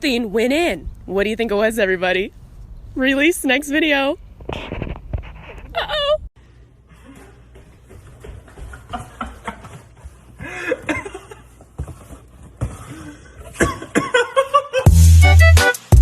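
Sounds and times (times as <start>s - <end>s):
person snickering or coughing: 10.4s - 11.6s, 12.8s - 14.8s
loud music with heavy bass beat: 14.9s - 16.0s.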